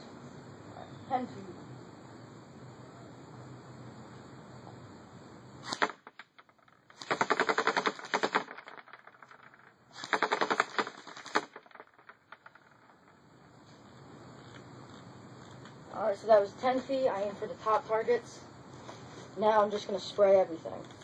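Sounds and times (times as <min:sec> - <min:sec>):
airsoft rifle bursts: 0:05.6 - 0:06.2, 0:06.9 - 0:08.8, 0:09.9 - 0:11.8.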